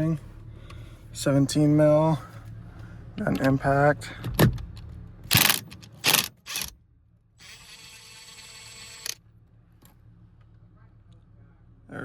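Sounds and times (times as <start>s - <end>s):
impact wrench bursts: 5.3s - 6.7s, 7.4s - 9.2s.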